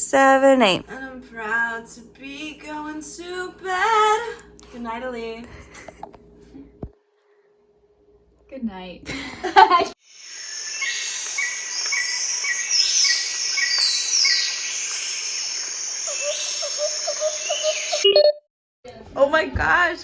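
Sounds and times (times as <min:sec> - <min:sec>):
insect-like chirping: 0:10.0 - 0:18.1
bird calls: 0:10.1 - 0:18.1.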